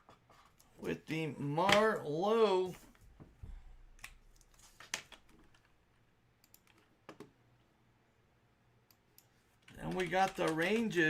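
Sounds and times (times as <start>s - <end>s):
faint clicks and taps: 8.9s - 11.0s.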